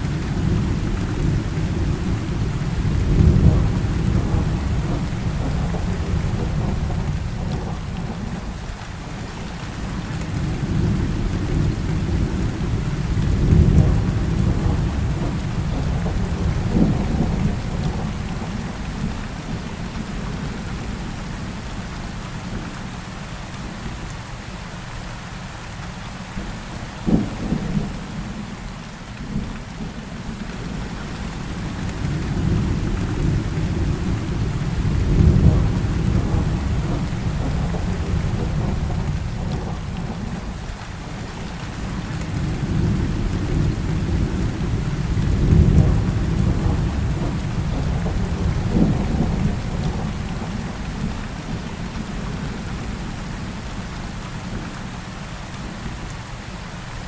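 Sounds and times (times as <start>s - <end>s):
rolling thunder: 0.0s - 8.6s, 9.8s - 20.9s, 30.6s - 53.5s
heavy rain falling: 0.0s - 57.0s
sharp thunderclap: 11.6s - 18.5s, 31.6s - 40.5s, 41.8s - 51.6s.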